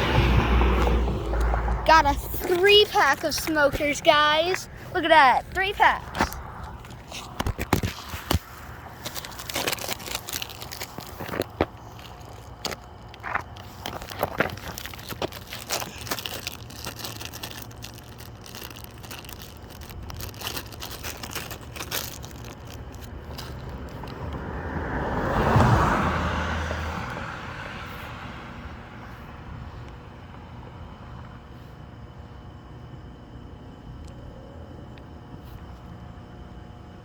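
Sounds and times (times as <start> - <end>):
road vehicle passing by: 0.0 - 2.6, 23.1 - 29.9
quick crackles and clicks: 0.8 - 24.3.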